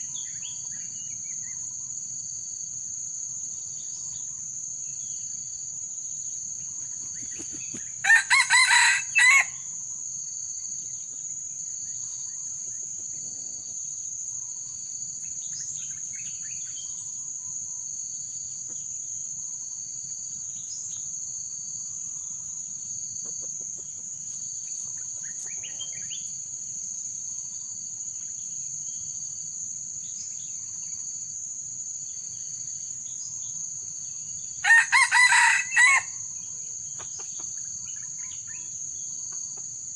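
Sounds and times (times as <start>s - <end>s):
rooster crowing: 8.0s - 9.6s, 34.6s - 36.2s.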